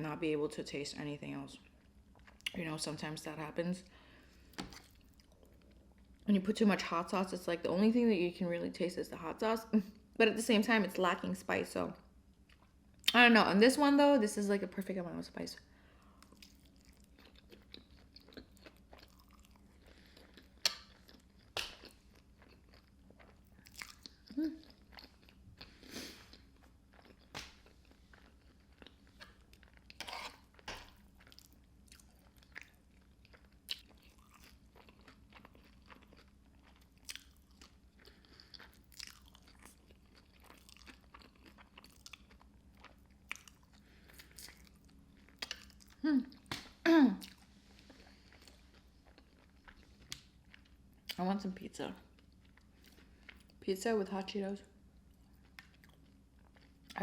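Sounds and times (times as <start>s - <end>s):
person chewing wetly: 16.0s - 51.2s, 55.0s - 57.0s
crunching food: 16.1s - 51.2s, 55.1s - 57.0s.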